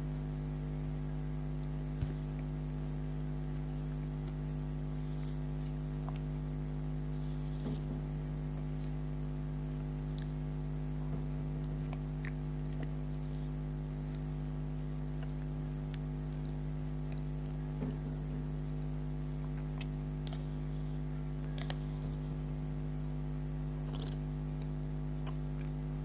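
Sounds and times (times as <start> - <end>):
steady low hum: 0.0 - 26.0
person chewing: 7.2 - 18.0, 18.7 - 20.8, 23.7 - 26.0.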